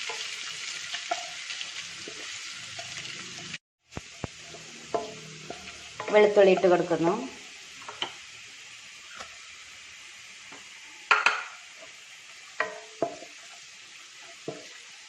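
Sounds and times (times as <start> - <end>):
spoon knocking and scraping pan: 0.0 - 3.0, 3.9 - 6.9, 7.8 - 8.2, 10.5 - 14.8
ginger and garlic sizzling in oil: 0.0 - 15.0.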